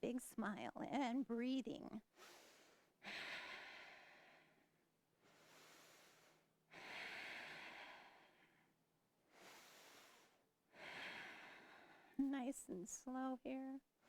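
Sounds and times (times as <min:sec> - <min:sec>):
woman breathing slowly: 0:02.1 - 0:12.2.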